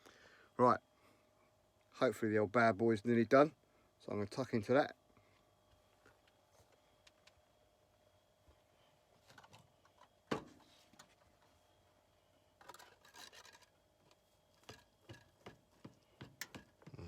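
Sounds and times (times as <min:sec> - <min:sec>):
rustling and scraping: 0:08.6 - 0:11.7, 0:12.6 - 0:17.0.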